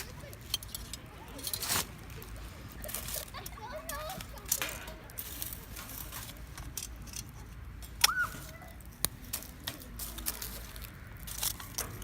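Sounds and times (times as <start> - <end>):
campfire crackling and popping: 8.8 - 10.4.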